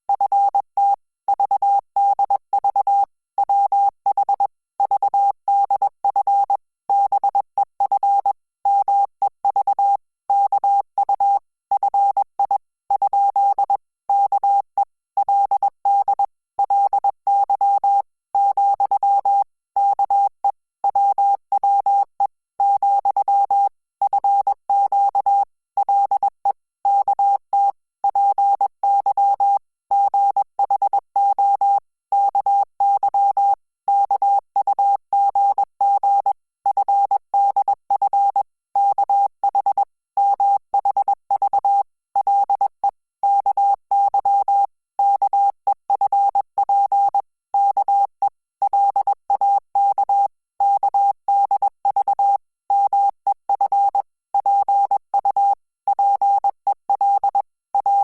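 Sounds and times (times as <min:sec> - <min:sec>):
morse code beeps: 0:45.9 - 0:58.0.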